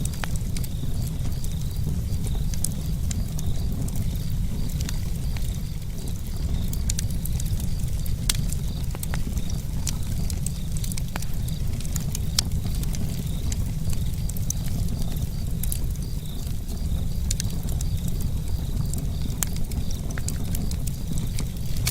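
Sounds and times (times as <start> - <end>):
campfire crackling and popping: 0.0 - 21.9.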